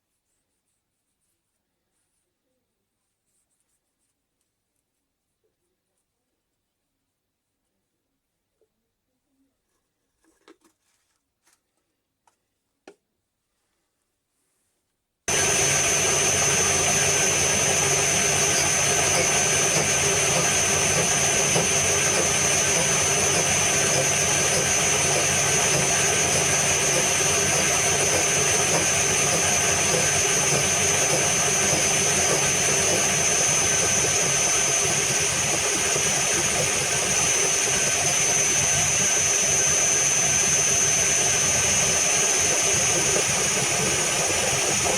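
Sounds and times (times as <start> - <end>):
machine tool motor whining: 15.3 - 44.9.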